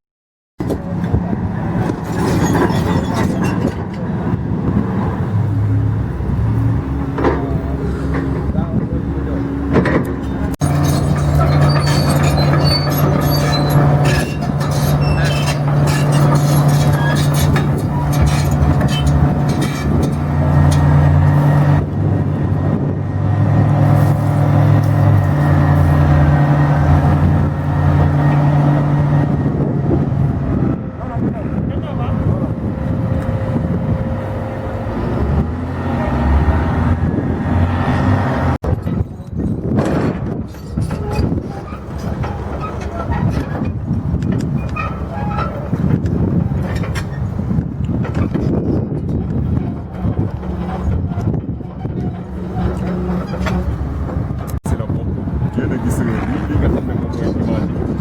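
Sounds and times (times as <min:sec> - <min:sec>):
demolition machine engine running: 0:00.6 - 0:58.0
knocks and clatter: 0:09.7 - 0:28.7, 0:37.9 - 0:54.8.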